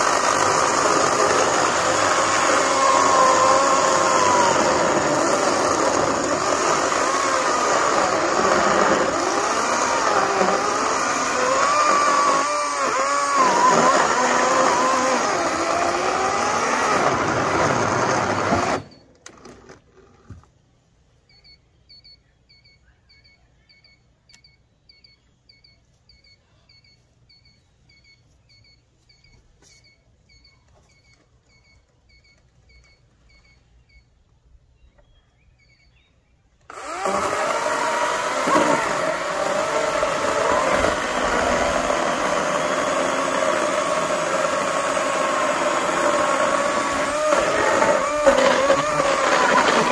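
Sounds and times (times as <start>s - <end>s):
chainsaw cutting wood: 0.0s - 20.0s, 36.7s - 49.9s
faint high chirps: 21.1s - 36.5s.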